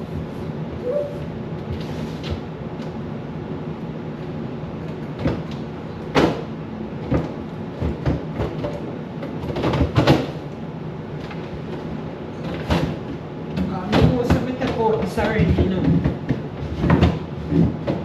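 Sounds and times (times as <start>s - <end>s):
steady low hum: 0.0s - 18.0s
items knocking in refrigerator: 6.1s - 6.4s, 7.0s - 8.8s, 9.4s - 10.4s.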